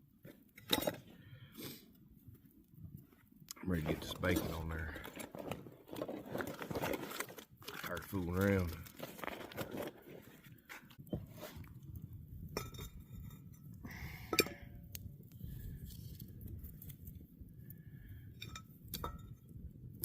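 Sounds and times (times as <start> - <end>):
camp cookware clinking: 0.6 - 1.1, 12.5 - 15.0, 18.2 - 19.6.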